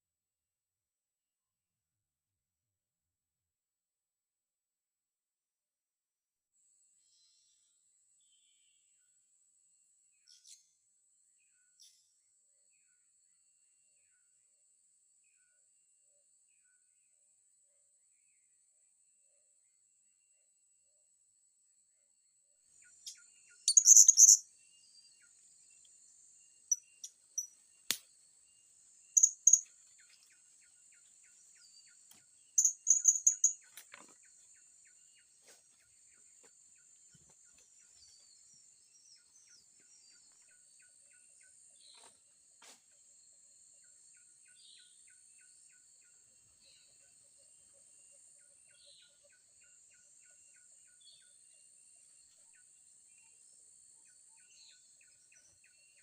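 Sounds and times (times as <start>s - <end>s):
insect drone: 23.0s - 29.8s, 31.6s - 33.6s
parrots chirping: 23.7s - 24.4s
ticking chirps: 23.7s - 24.4s, 29.2s - 29.7s, 32.6s - 33.6s.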